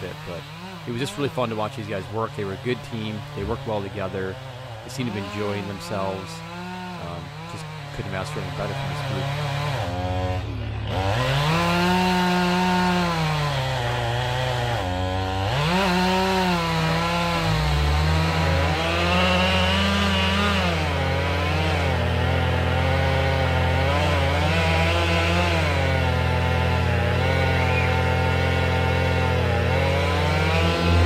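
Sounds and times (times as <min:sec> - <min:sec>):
chainsaw revving: 0:00.0 - 0:31.0
heavy machinery engine drone: 0:07.0 - 0:15.6, 0:25.8 - 0:31.0.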